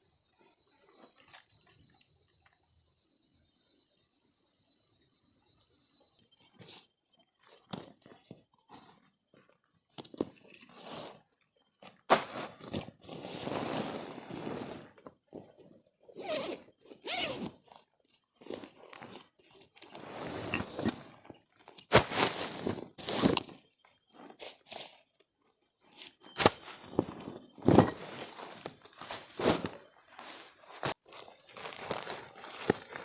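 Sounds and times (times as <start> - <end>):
crunching and rustling: 11.8 - 25.1, 25.8 - 33.0.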